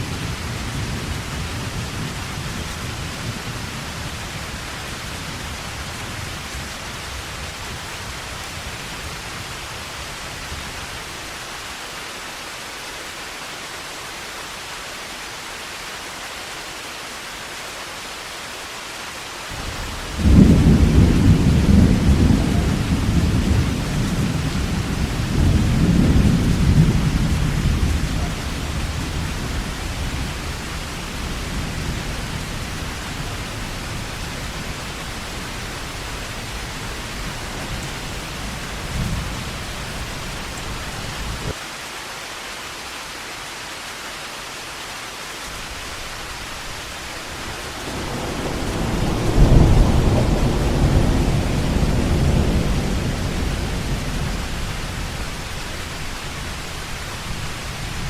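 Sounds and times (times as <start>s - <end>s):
heavy rain: 0.0s - 58.0s
rolling thunder: 19.5s - 41.6s, 47.0s - 58.0s.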